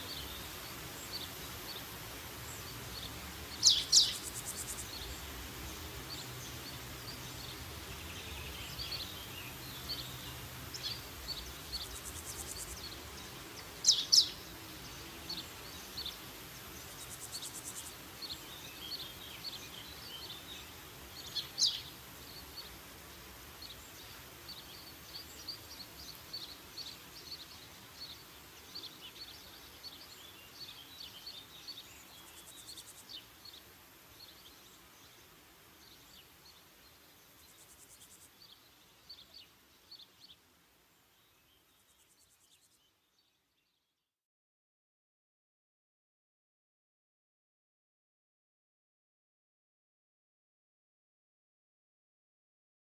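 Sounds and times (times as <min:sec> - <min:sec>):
birds chirping: 0:00.0 - 0:40.4
faint steady hiss: 0:00.0 - 0:43.9.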